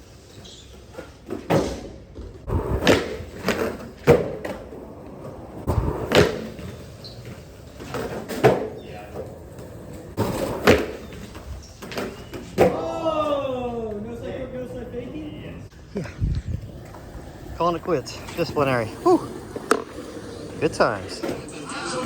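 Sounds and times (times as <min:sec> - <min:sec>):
skateboard wheels rolling rumble: 0:00.0 - 0:22.0
skateboard clacking on ground: 0:16.6 - 0:22.0.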